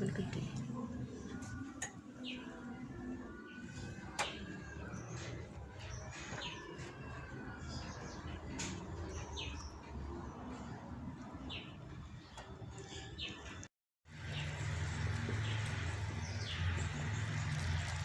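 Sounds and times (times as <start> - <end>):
birds chirping: 0.0 - 18.0
small birds chirping: 11.4 - 18.0.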